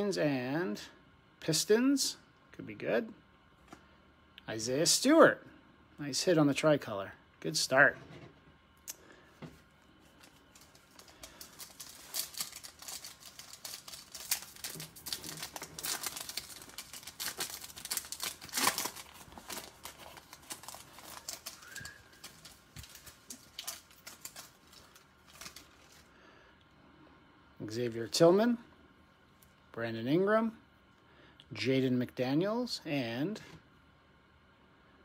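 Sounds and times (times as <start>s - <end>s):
card pack wrapper crinkling: 10.0s - 26.1s.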